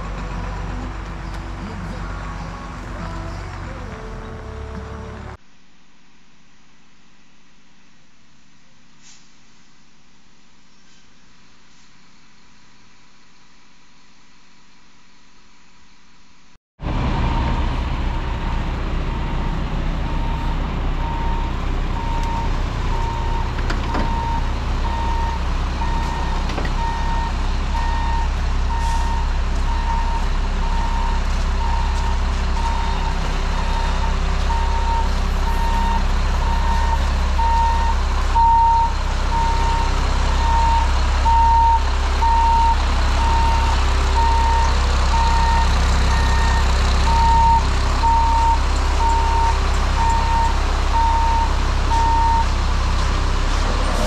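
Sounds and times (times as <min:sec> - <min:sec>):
diesel engine running: 0:00.0 - 0:05.4, 0:16.8 - 0:54.0
truck backup alarm beeps: 0:17.1 - 0:52.6.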